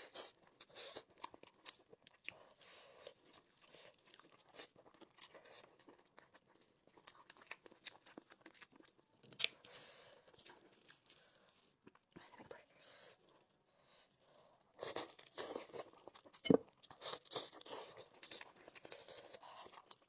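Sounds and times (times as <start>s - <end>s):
chewing and crunching food: 0.0s - 20.0s.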